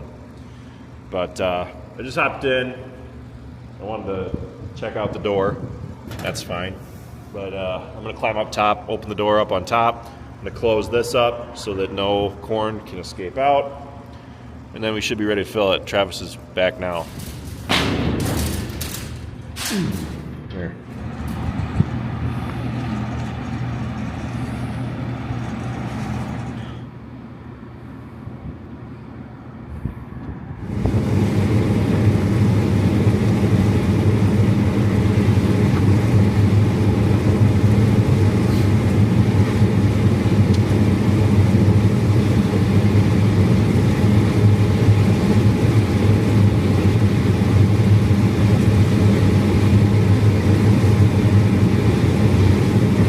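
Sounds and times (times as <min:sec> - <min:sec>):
tractor engine running: 0:21.0 - 0:26.6
steady rushing noise: 0:30.5 - 0:53.0.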